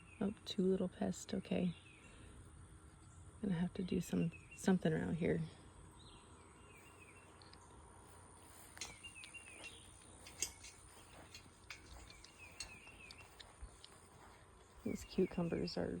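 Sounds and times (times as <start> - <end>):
bird chirping: 3.0 - 7.9, 8.5 - 16.0.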